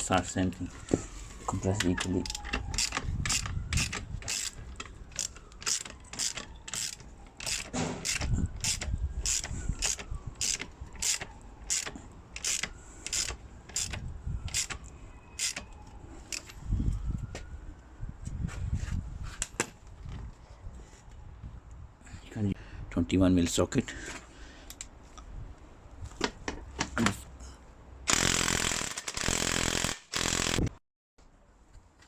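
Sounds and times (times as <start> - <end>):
socket ratchet clicking: 2.2 - 14.8, 15.4 - 15.6.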